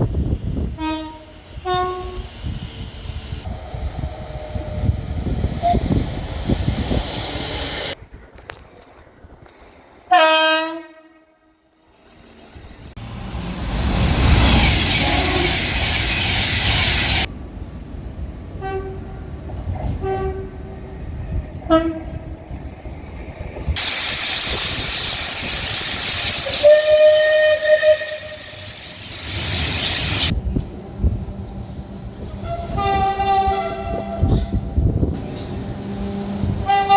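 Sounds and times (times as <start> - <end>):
train passing: 0.0 - 36.9
train horn blasts: 0.8 - 2.4, 10.1 - 11.7, 14.8 - 15.8, 18.6 - 20.8, 21.6 - 22.3, 26.6 - 28.7, 32.3 - 34.7, 35.9 - 36.9.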